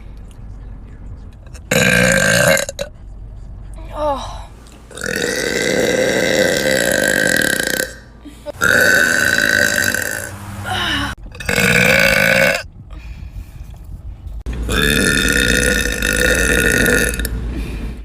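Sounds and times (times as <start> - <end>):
woman belching: 1.7 - 2.9, 4.9 - 12.6, 14.7 - 17.3.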